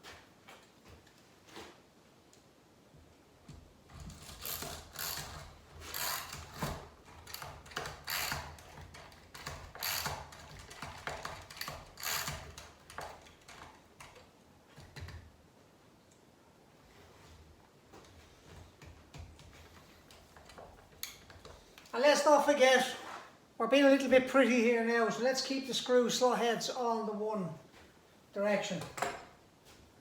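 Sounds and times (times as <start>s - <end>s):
ratchet clicking: 4.4s - 6.7s, 7.3s - 8.6s, 9.7s - 10.3s, 11.5s - 12.6s.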